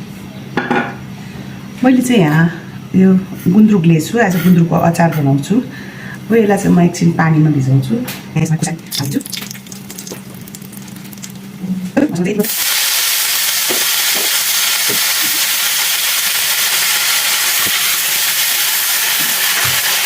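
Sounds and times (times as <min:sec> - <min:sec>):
food sizzling in hot oil: 0:08.9 - 0:11.6, 0:12.4 - 0:20.0.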